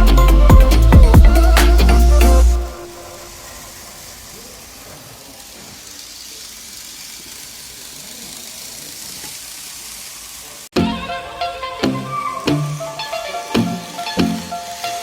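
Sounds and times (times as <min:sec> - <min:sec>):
model trains running: 0:00.0 - 0:15.0.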